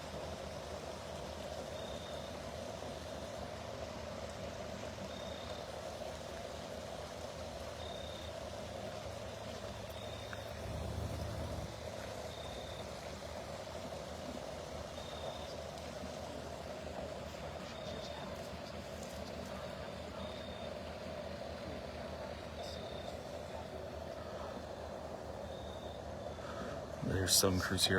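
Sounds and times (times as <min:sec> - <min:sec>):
low rumble: 0:10.4 - 0:11.8
steady rushing noise: 0:10.5 - 0:11.8.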